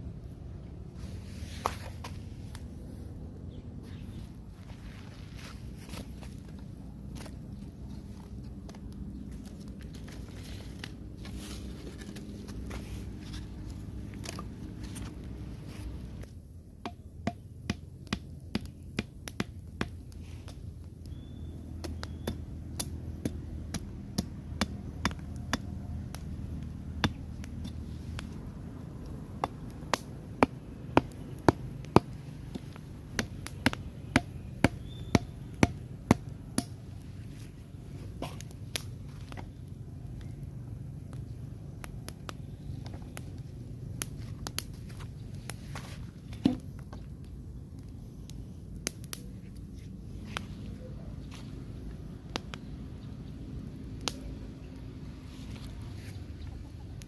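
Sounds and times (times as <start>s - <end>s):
sharp chopping strikes: 29.4s - 36.8s.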